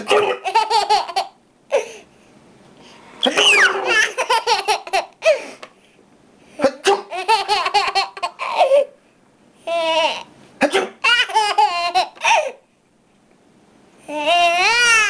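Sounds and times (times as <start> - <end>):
baby laughing: 0.0 - 2.0, 3.2 - 5.4, 7.0 - 9.0, 11.0 - 12.6.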